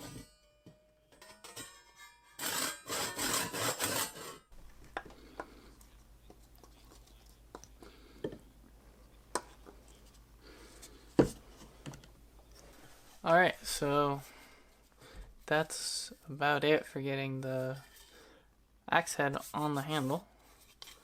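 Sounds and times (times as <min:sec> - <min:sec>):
hand tool rasping on wood: 0:02.4 - 0:04.4.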